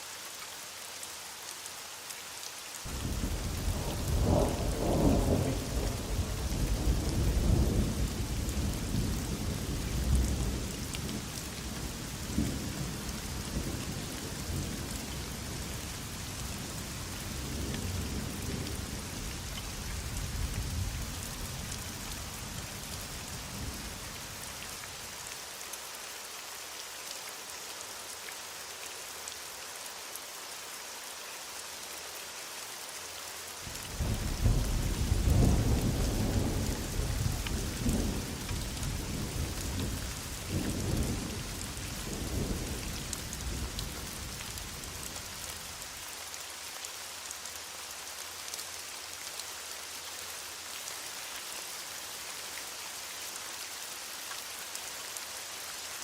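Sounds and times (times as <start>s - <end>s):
heavy rain: 0.0s - 56.0s
distant thunder rumbling: 2.9s - 10.6s, 33.9s - 43.9s.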